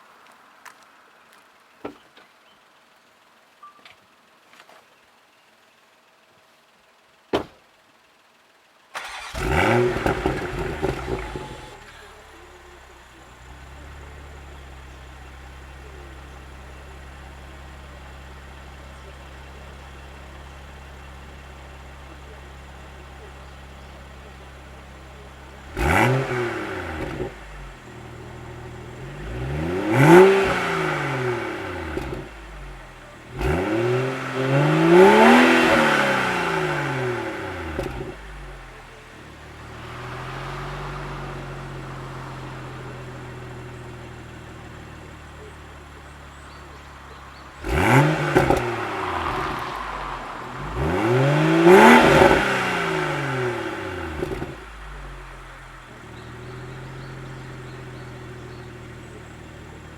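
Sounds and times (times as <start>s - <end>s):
car engine revving: 9.0s - 59.9s.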